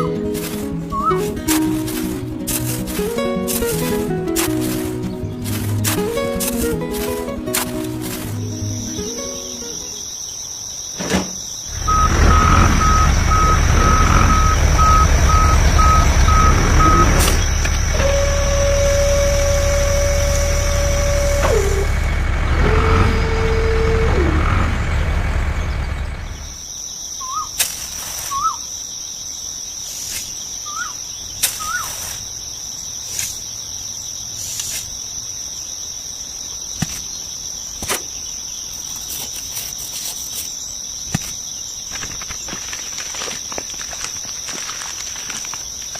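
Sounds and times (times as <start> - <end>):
truck engine rumbling: 0.0 - 10.0, 11.7 - 26.6
insect trill: 0.0 - 22.0, 25.7 - 45.9
bird chirps: 0.8 - 2.1, 27.2 - 27.6, 28.3 - 28.7, 30.2 - 33.6
reversing alarm beeping: 11.7 - 22.0, 22.6 - 24.4
horn tones dropping in pitch: 11.7 - 24.9.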